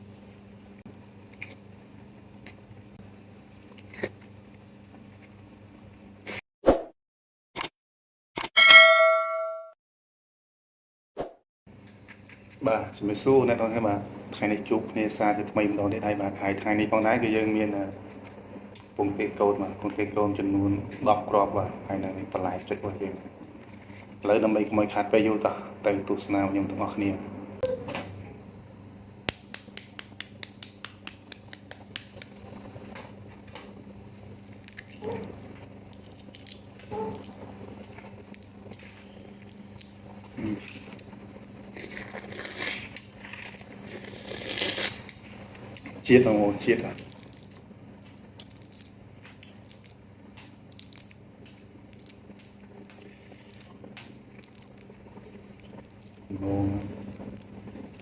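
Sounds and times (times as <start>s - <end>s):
person chewing food: 34.3s - 46.0s, 46.9s - 47.7s, 48.3s - 58.0s.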